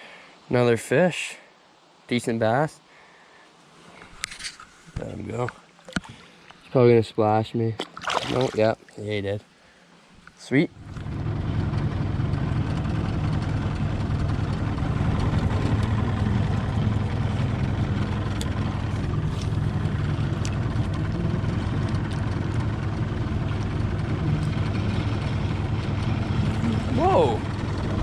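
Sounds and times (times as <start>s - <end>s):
outboard motor running: 7.8s - 9.0s, 10.7s - 28.0s.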